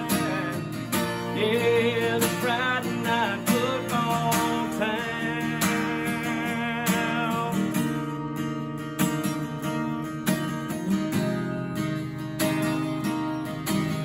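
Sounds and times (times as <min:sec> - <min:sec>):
person singing: 0:00.0 - 0:07.9
country song with acoustic guitar: 0:00.0 - 0:14.0.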